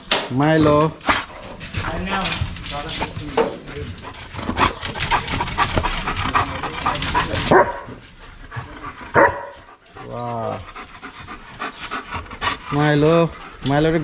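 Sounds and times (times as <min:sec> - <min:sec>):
dog barking: 0:07.5 - 0:08.0, 0:09.1 - 0:09.7
dog whining: 0:09.2 - 0:10.7.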